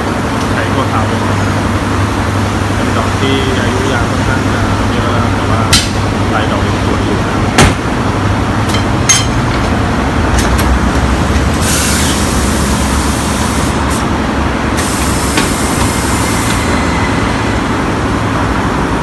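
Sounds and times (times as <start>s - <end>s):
steady low rumble: 0.0s - 14.8s
compressed air hissing: 11.5s - 18.3s.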